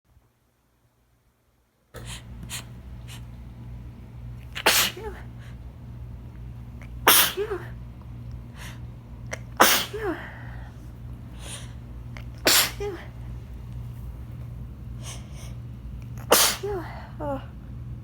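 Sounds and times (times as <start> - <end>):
person sneezing: 2.0 - 3.2, 4.5 - 5.3, 7.0 - 7.8, 9.3 - 10.7, 11.4 - 13.1, 16.2 - 17.4.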